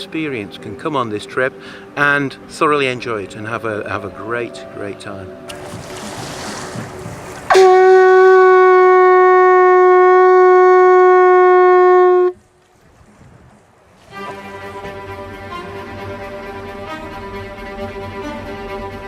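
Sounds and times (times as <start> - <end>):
long horn-like note: 7.5 - 12.4.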